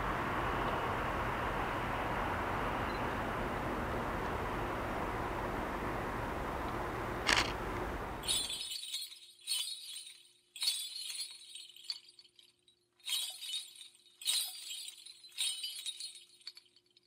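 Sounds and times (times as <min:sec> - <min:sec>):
faint steady hum: 0:00.0 - 0:08.6
glassy clinking crashes: 0:08.2 - 0:17.0.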